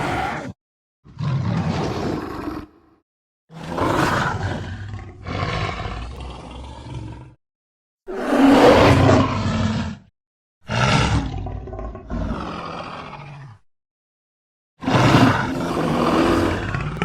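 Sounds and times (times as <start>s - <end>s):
monster roar: 0.0s - 2.9s, 3.5s - 7.4s, 8.1s - 10.1s, 10.7s - 13.3s, 14.8s - 17.0s.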